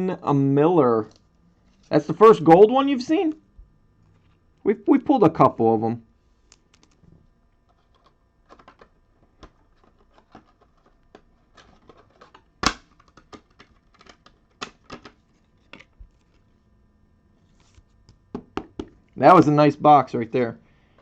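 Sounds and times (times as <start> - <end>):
cards clicking and tapping: 7.7 - 16.4, 17.6 - 19.0.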